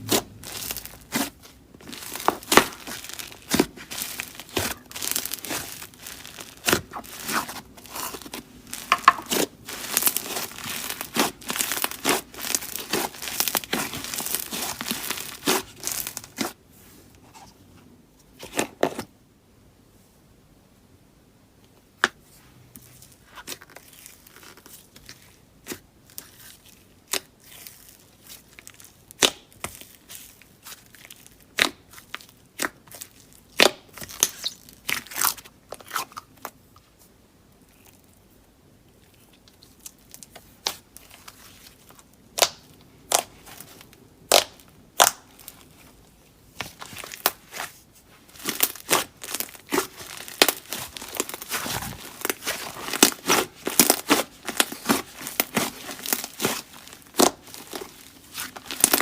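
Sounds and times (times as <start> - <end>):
slime popping and crackling: 0.0 - 16.6, 27.0 - 36.2, 42.3 - 45.8, 46.6 - 59.0.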